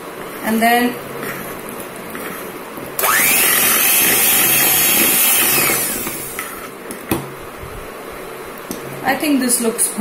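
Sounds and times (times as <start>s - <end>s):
kitchen mixer motor whine: 3.0s - 6.4s.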